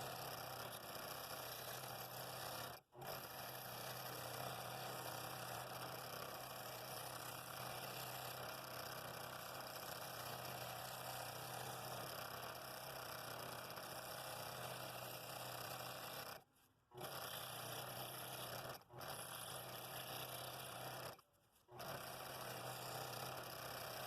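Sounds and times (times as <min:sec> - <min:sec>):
scroll saw cutting wood: 0:00.0 - 0:05.4, 0:17.0 - 0:24.0.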